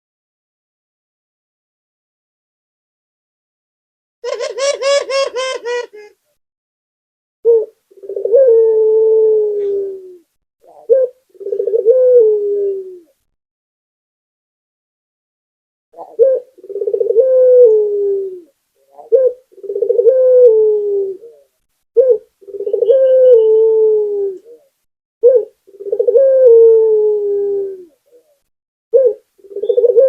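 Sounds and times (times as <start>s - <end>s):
dove cooing: 4.2s - 6.2s, 7.5s - 13.2s, 16.0s - 30.0s.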